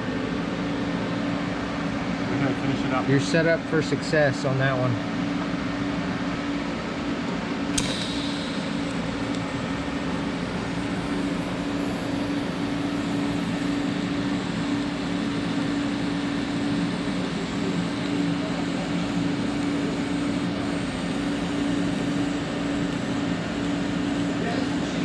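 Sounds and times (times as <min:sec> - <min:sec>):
steady hum: 0:00.0 - 0:25.0
welding buzzing hiss: 0:07.6 - 0:25.0
sharp click: 0:07.7 - 0:11.7.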